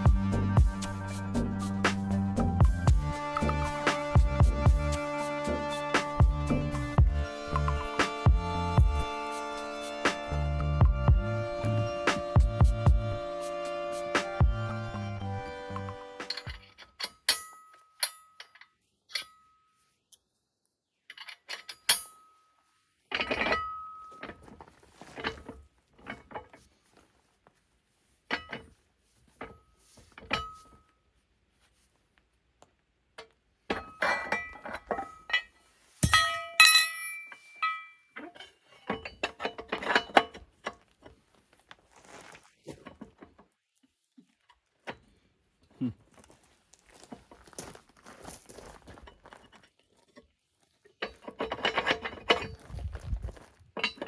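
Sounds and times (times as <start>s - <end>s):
steel parts knocking together: 16.3s - 19.5s, 33.2s - 40.9s, 51.0s - 52.6s, 53.8s - 54.0s.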